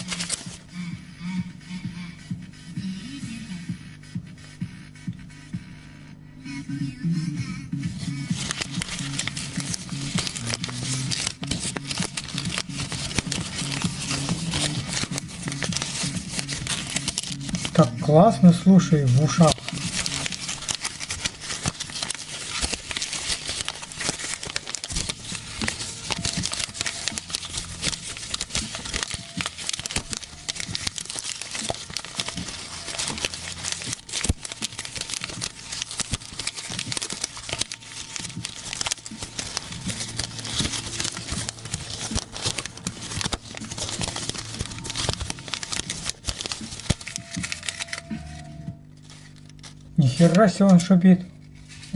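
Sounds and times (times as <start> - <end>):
paper rustling and crumpling: 0.0 - 0.6, 8.0 - 51.9.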